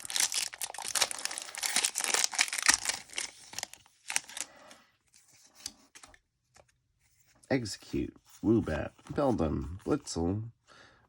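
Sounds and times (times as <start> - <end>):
foil wrapper tearing and crinkling: 0.0 - 4.5.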